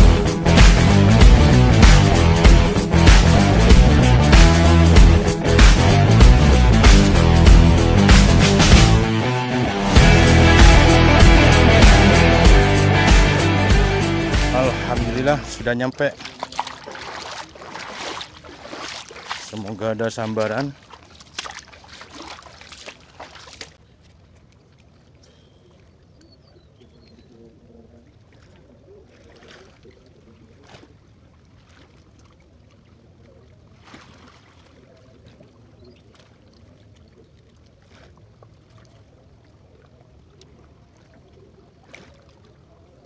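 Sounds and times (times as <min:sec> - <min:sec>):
trickling water: 0:15.7 - 0:27.0, 0:28.0 - 0:43.0.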